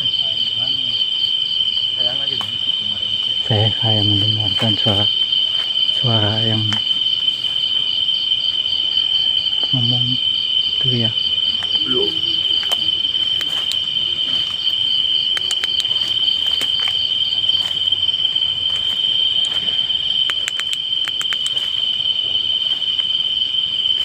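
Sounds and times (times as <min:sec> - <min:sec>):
insects trilling: 0:00.0 - 0:24.0
faint clicks: 0:15.3 - 0:16.7, 0:20.2 - 0:21.7.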